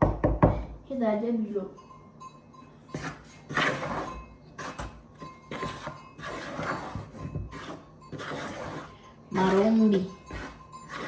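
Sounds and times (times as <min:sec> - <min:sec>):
rustling and scraping of handling: 0:02.6 - 0:11.0.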